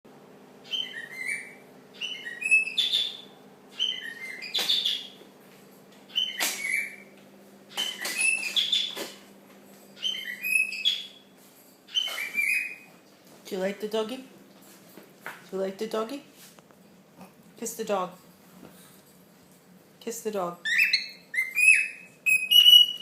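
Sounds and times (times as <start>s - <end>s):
cockatiels chirping and whistling: 0.6s - 5.2s, 6.1s - 7.1s, 7.7s - 9.0s, 10.0s - 11.2s, 11.9s - 12.9s, 20.7s - 23.0s.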